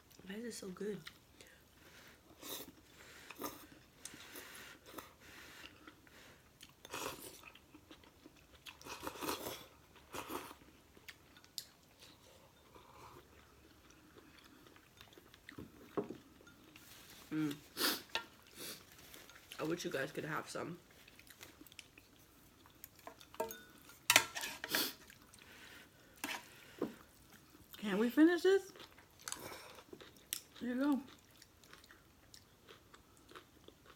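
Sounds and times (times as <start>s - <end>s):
crunchy chewing: 28.8s - 33.9s.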